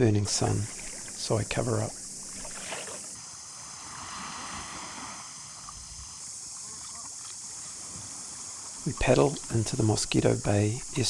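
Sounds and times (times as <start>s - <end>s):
steady high hiss: 0.0s - 11.0s
water swishing around paddle: 0.0s - 11.0s.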